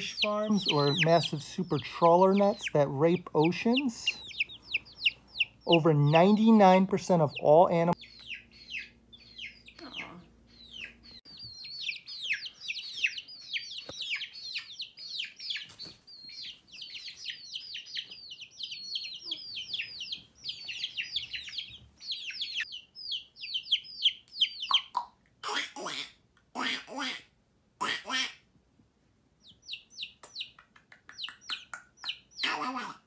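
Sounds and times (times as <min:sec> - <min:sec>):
chicks peeping: 0:00.0 - 0:27.1, 0:29.2 - 0:33.0.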